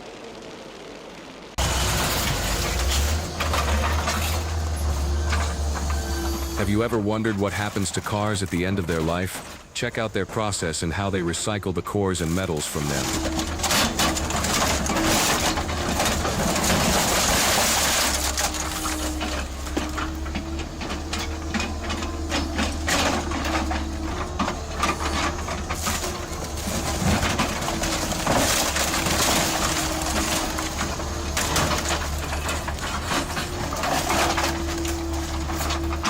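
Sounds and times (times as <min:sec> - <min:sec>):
machine hum with whine: 0:00.0 - 0:06.8
metallic knocks and crunches: 0:01.6 - 0:10.1, 0:12.3 - 0:36.0.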